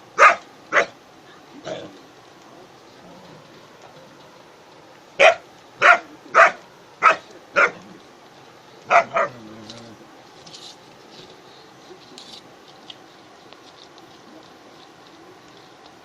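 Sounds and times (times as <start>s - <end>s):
dog barking: 0.2s - 1.0s, 5.2s - 7.8s, 8.9s - 9.4s.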